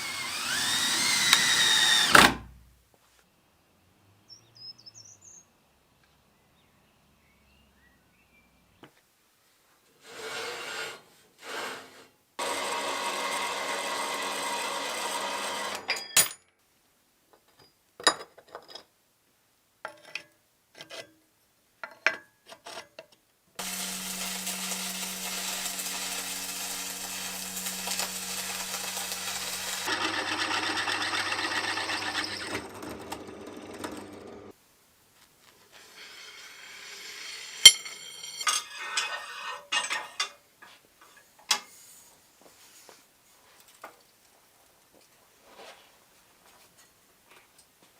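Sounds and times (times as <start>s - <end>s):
power tool working wood: 0.0s - 2.6s, 12.4s - 15.8s, 23.6s - 34.5s.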